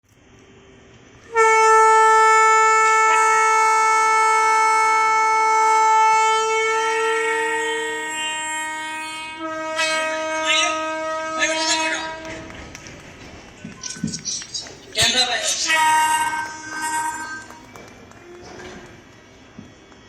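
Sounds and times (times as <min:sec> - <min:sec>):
train horn blast: 0:01.2 - 0:12.5, 0:15.6 - 0:18.9.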